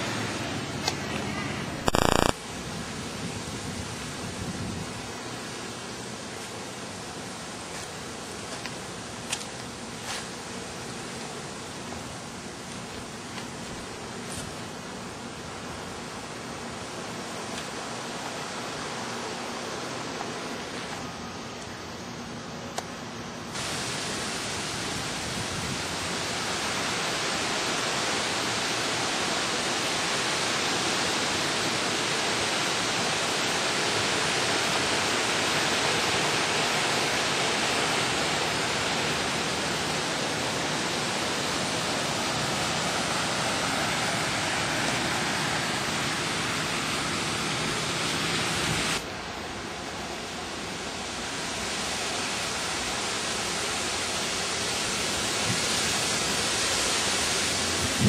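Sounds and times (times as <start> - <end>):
heavy rain pouring: 0.0 - 9.2, 23.6 - 58.0
wind: 0.0 - 58.0.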